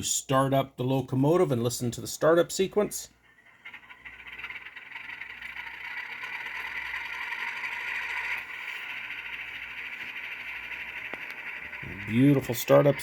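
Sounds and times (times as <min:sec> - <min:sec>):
tinny diesel engine sound from speaker: 0:03.8 - 0:13.0.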